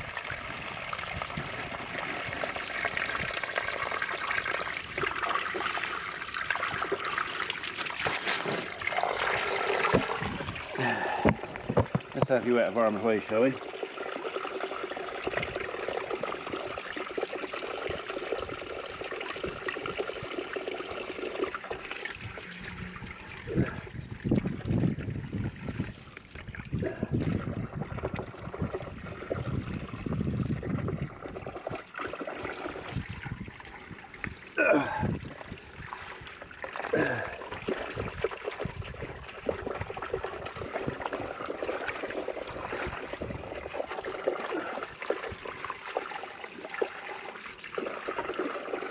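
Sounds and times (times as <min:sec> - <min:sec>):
water trickling from a pipe: 0:00.0 - 0:48.9
splashing and handling in water: 0:04.9 - 0:12.4, 0:35.2 - 0:48.9.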